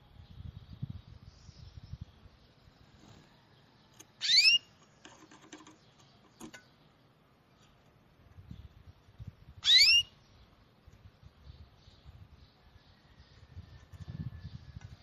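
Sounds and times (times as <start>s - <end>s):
bird whistled call: 4.2s - 4.6s, 9.6s - 10.1s.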